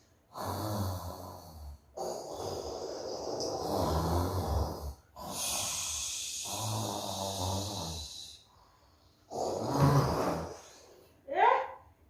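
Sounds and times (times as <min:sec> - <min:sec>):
woman snoring: 0:00.3 - 0:08.4, 0:09.3 - 0:10.9
hissing puff of breath: 0:05.2 - 0:07.0.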